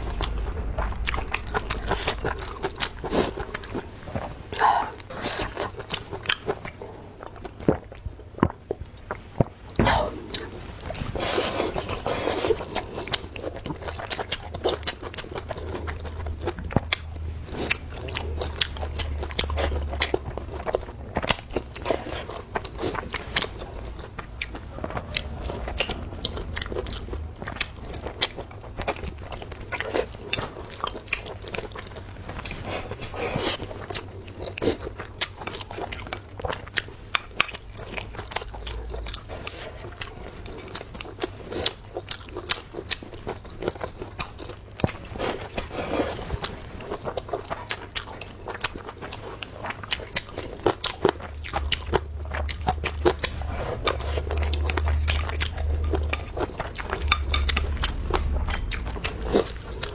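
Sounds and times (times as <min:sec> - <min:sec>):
low hum: 0:00.0 - 0:05.1, 0:13.5 - 0:29.6, 0:50.3 - 0:59.9
person chewing crunchy food: 0:00.0 - 0:59.9.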